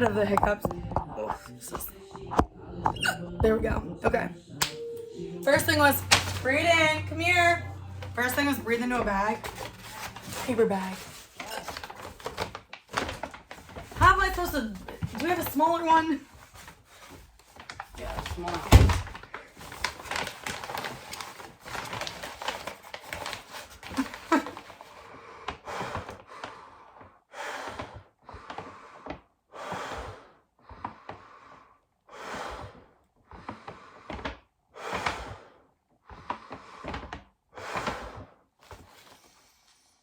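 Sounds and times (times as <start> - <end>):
paper bag crinkling: 5.8 - 25.0
breathing into paper bag: 9.4 - 14.0, 16.3 - 40.0.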